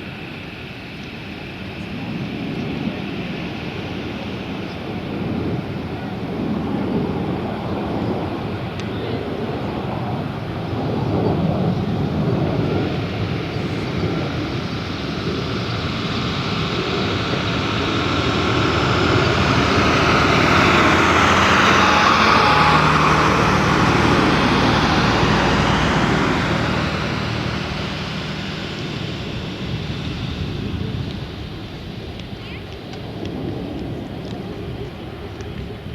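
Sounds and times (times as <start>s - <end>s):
jet engines roaring in flyby: 0.0s - 35.9s
jet whine dropping in pitch: 11.0s - 32.3s.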